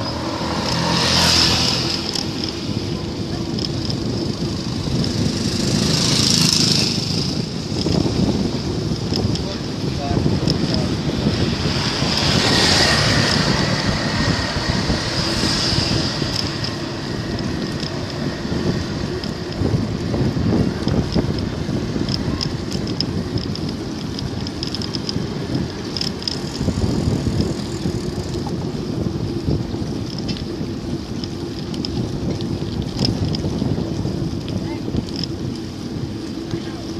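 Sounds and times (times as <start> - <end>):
road and traffic noise: 0.0 - 36.9
wind buffeting microphone: 0.0 - 36.9.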